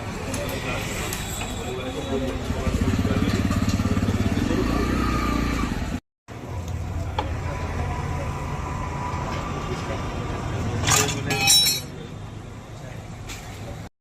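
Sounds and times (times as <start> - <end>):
traffic noise with low hum: 0.0 - 13.9
motorcycle engine running: 2.4 - 6.0.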